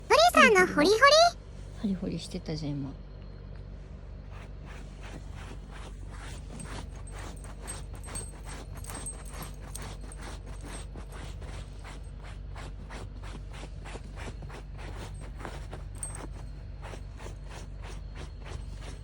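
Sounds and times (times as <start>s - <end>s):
dog scratching with paws: 4.2s - 19.0s.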